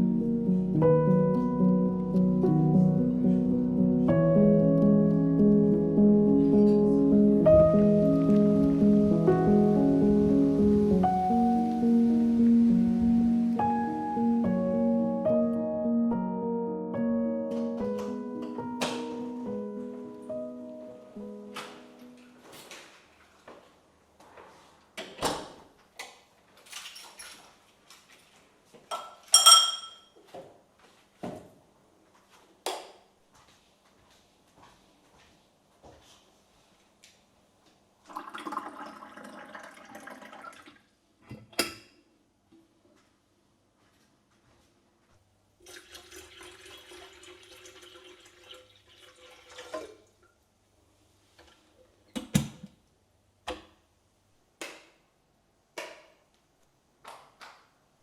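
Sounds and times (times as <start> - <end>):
dish clinking: 28.9 - 30.2
dishes and cutlery clattering: 28.9 - 30.2
tap water running into sink: 45.6 - 50.1.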